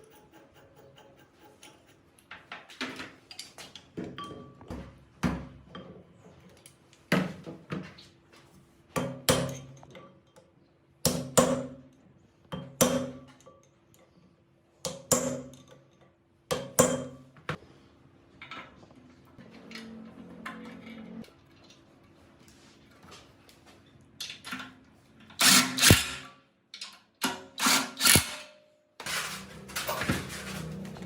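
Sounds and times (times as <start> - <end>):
metal knocks and clanks: 29.0 - 31.0.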